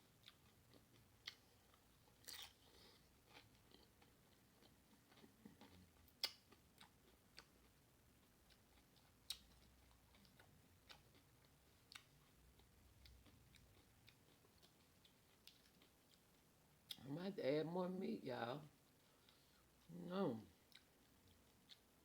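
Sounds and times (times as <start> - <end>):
chewing crunchy chips: 0.2 - 17.0.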